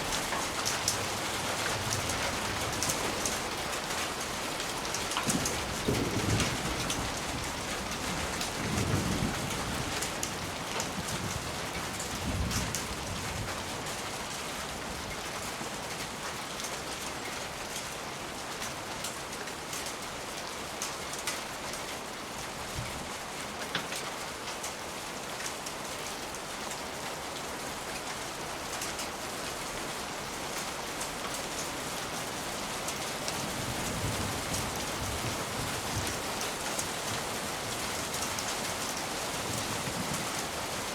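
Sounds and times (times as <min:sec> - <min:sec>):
steady rain: 0:00.0 - 0:40.9.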